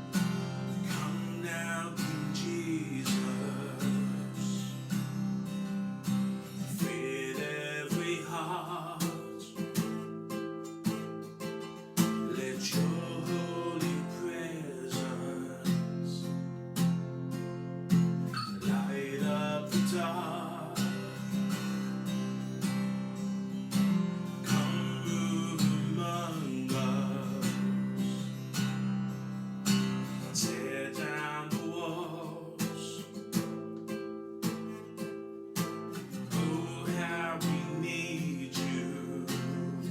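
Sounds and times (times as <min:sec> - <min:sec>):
person singing: 0:00.0 - 0:04.9, 0:06.6 - 0:10.0, 0:12.0 - 0:16.4, 0:18.3 - 0:22.0, 0:24.2 - 0:28.4, 0:30.2 - 0:33.4, 0:36.0 - 0:39.9
strummed acoustic guitar: 0:00.0 - 0:39.9.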